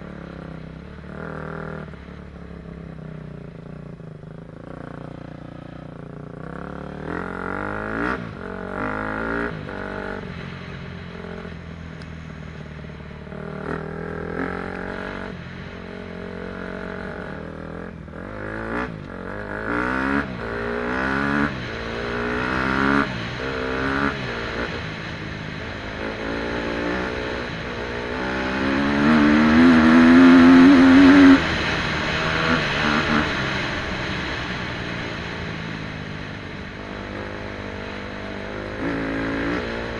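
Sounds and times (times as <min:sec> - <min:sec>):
dirt bike engine revving: 0:06.4 - 0:10.2, 0:16.6 - 0:24.8, 0:25.8 - 0:34.4, 0:36.9 - 0:39.9.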